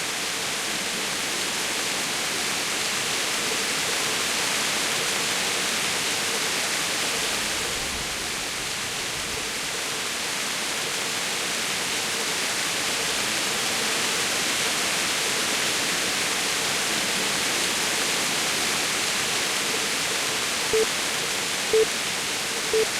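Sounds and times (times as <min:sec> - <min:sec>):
short beep: 0:22.7 - 0:22.9.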